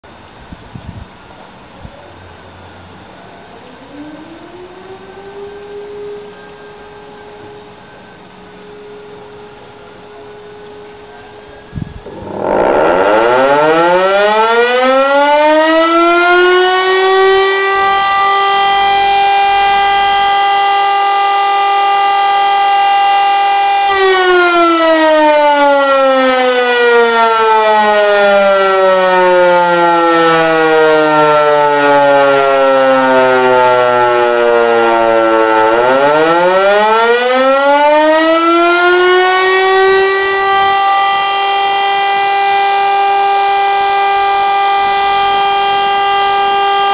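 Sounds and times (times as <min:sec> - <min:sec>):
motor siren wailing: 0:03.1 - 0:46.9.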